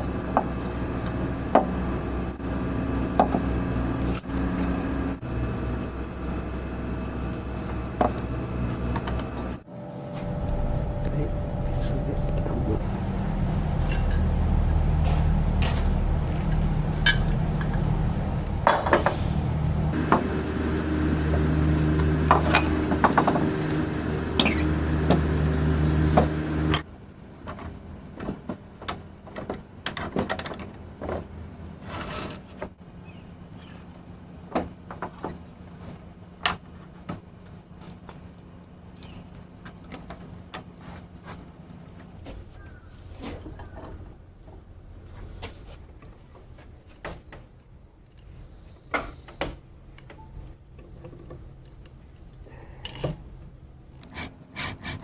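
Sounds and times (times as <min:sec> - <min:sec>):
steady machine hum: 0:00.0 - 0:27.1.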